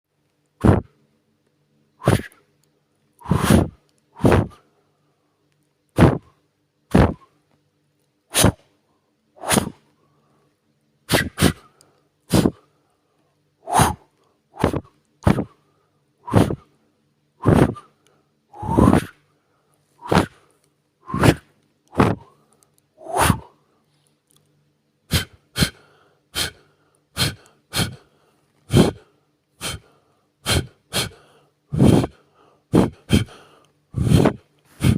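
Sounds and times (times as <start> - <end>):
puffs of breath blown: 2.0 - 2.4, 3.2 - 5.3, 8.3 - 8.7, 9.4 - 16.8, 17.4 - 24.1, 25.1 - 34.9.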